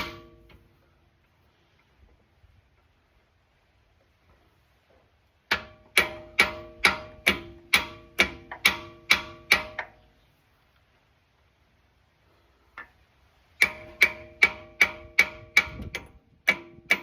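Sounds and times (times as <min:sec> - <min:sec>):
hammer blows on metal: 0:13.6 - 0:17.0.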